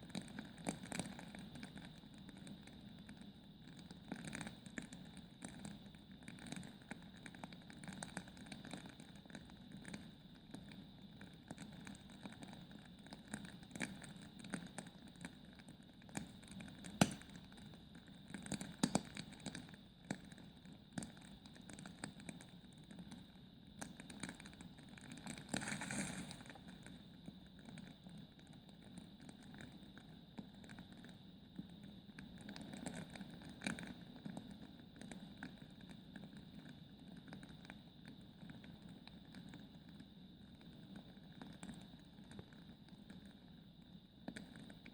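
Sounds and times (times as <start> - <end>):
fire crackling and popping: 16.2 - 17.6.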